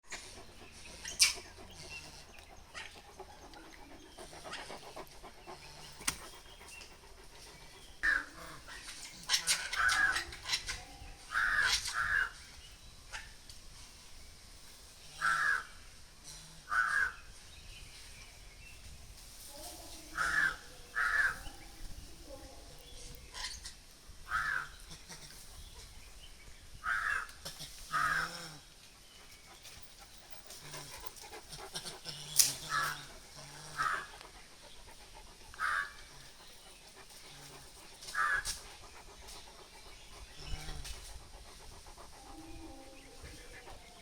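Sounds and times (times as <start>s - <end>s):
harsh animal calls: 26.8s - 28.6s, 30.6s - 43.8s.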